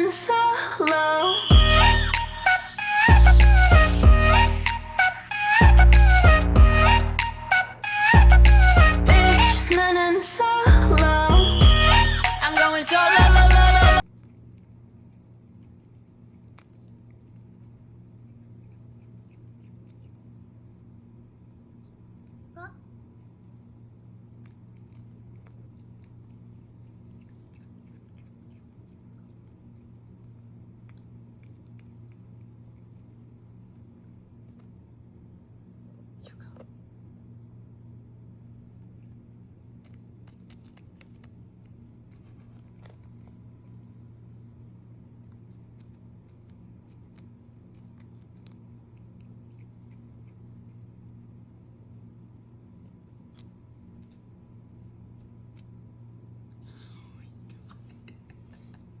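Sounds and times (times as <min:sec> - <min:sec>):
steady low hum: 0:00.0 - 0:59.0
kitten chewing lettuce: 0:11.0 - 0:37.1, 0:38.0 - 0:59.0.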